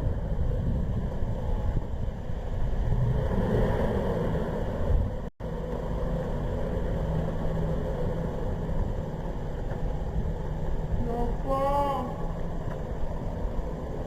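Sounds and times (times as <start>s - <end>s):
car engine running: 5.4s - 14.0s.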